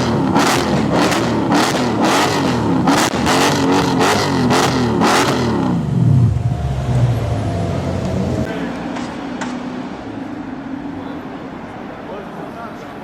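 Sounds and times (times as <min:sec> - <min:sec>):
car engine revving: 0:00.0 - 0:10.0.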